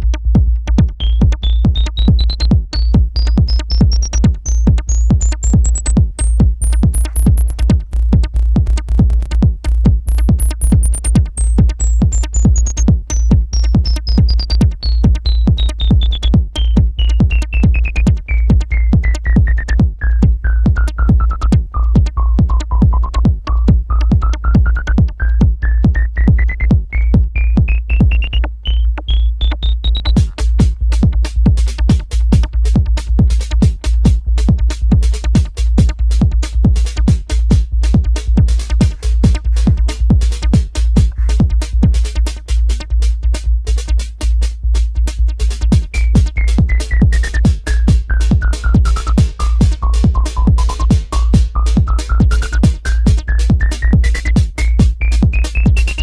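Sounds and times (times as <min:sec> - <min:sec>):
electronic dance music: 0:00.8 - 0:56.0.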